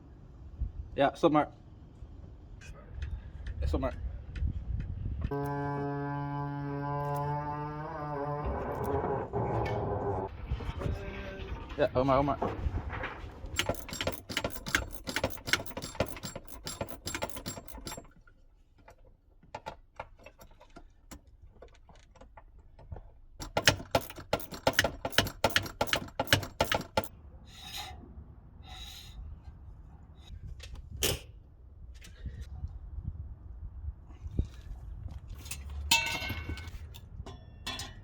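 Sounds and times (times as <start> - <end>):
hand tools clicking: 13.6 - 18.2, 23.4 - 27.1.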